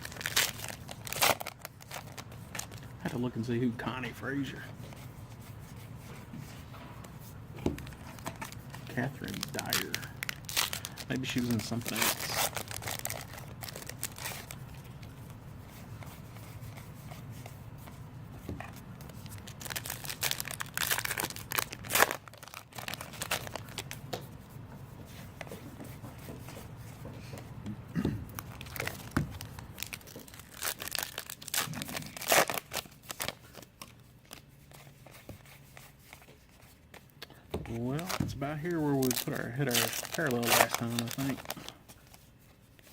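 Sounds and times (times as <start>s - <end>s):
card pack wrappers tearing: 0.0s - 2.9s, 7.8s - 14.6s, 19.0s - 24.0s, 28.4s - 34.4s, 37.7s - 41.7s
low steady hum: 0.0s - 42.9s.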